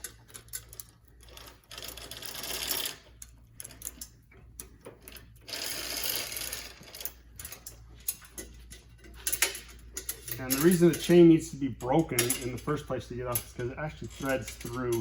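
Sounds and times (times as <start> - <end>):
bicycle chain clattering: 0.0 - 15.0
chain links clicking: 0.0 - 15.0.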